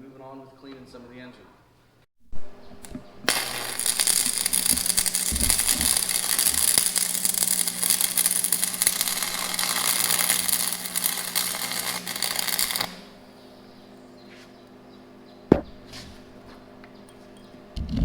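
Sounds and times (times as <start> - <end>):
steady low hum: 2.3 - 18.0
metal tool crackling hiss: 3.3 - 13.2.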